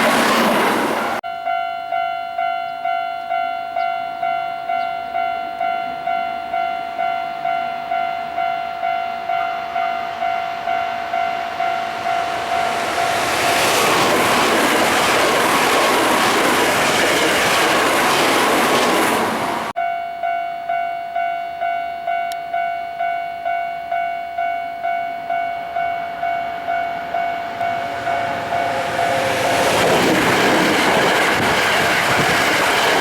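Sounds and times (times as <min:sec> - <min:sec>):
passing train rushing: 0:00.0 - 0:01.2, 0:05.6 - 0:19.8, 0:25.3 - 0:33.0
level-crossing warning bell: 0:01.0 - 0:33.0.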